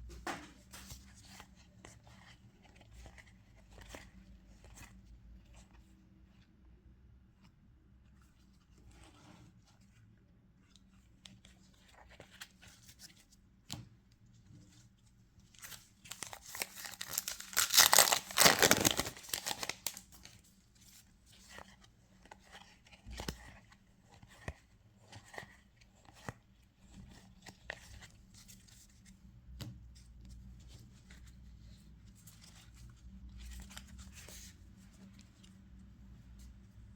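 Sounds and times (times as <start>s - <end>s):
wrapper tearing open: 16.1s - 20.3s.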